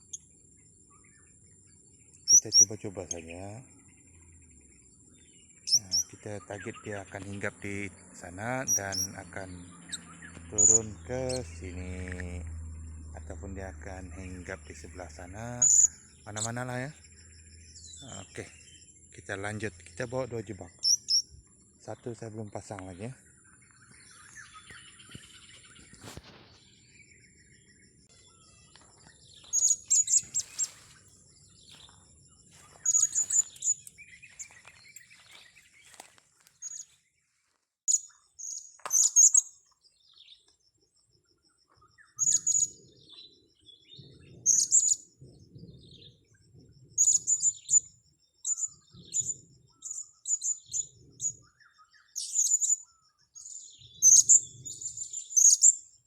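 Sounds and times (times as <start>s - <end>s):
parrots chirping high-pitched: 2.3s - 2.7s, 8.6s - 10.9s, 20.8s - 21.3s, 32.8s - 34.5s, 42.2s - 42.7s.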